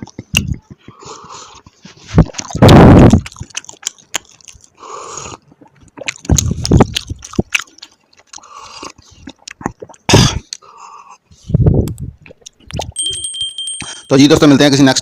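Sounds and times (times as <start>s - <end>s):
person chewing and biting: 0.0s - 11.1s.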